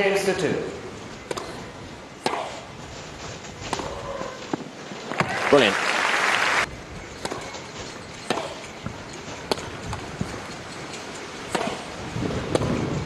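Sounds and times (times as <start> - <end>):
wind: 0.0 - 13.0
tennis ball pops: 1.3 - 1.6.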